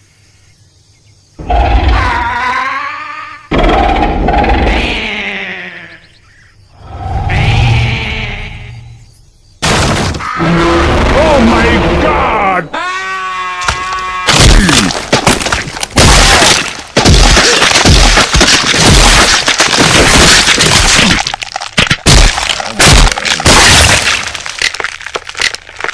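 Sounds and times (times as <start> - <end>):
distorted cracking and crashing: 14.4 - 25.9.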